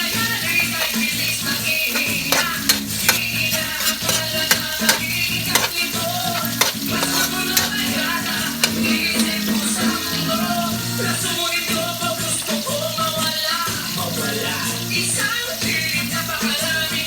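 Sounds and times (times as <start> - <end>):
background music: 0.0 - 17.0
food sizzling in a frying pan: 0.0 - 17.0
utensil knocking against pan: 0.4 - 10.3.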